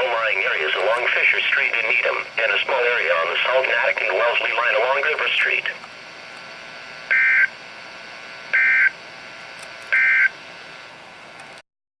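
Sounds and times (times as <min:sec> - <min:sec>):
digital data tone bursts: 0:08.5 - 0:09.0.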